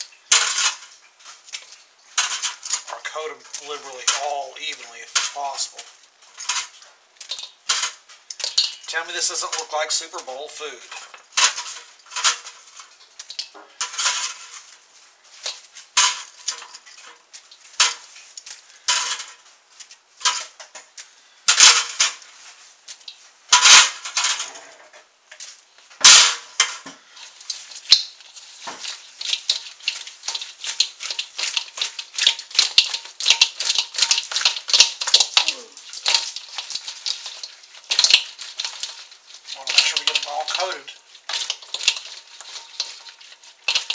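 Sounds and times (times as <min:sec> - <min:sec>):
utensil clacking against a bowl: 0:00.0 - 0:10.3, 0:26.6 - 0:43.9.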